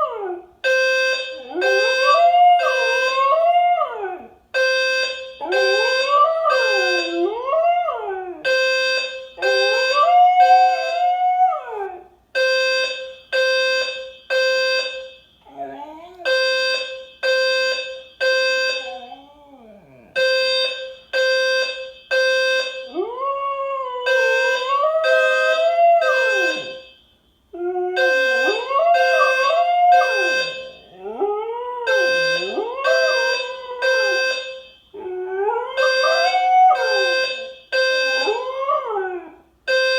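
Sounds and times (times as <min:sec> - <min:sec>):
fire alarm beeping: 0:00.6 - 0:03.5, 0:04.6 - 0:07.3, 0:08.4 - 0:11.0, 0:12.4 - 0:15.5, 0:16.2 - 0:19.1, 0:20.2 - 0:23.1, 0:24.1 - 0:31.0, 0:31.9 - 0:35.0, 0:35.8 - 0:38.4, 0:39.7 - 0:39.9
dog howling: 0:15.5 - 0:16.3, 0:18.9 - 0:20.2.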